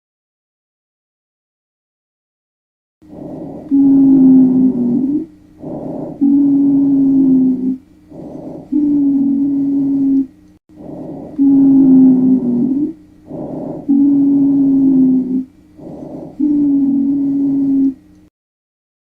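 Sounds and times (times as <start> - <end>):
wheezing breaths: 3.1 - 18.0.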